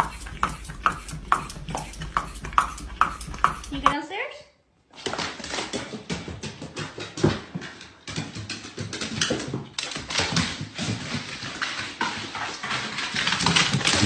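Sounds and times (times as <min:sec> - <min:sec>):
dog vocalizing: 0:00.0 - 0:04.0.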